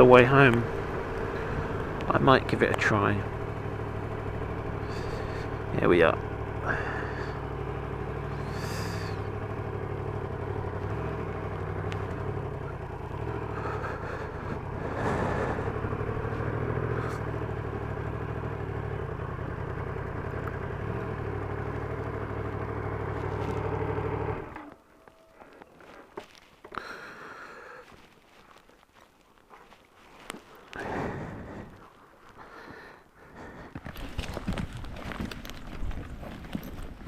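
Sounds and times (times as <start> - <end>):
motorcycle engine idling: 0.0 - 28.0.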